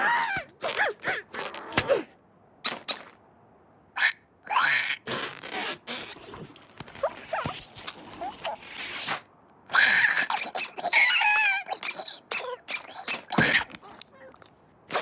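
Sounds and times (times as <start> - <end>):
cartoon ostrich squawks and grunts: 4.0 - 5.4, 9.7 - 15.0.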